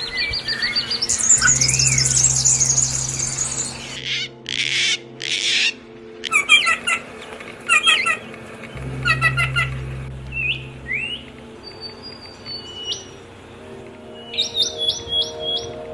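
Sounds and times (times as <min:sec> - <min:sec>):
songbird trilling and chirping: 0:00.1 - 0:05.6
harsh rasping bird calls: 0:00.8 - 0:07.0.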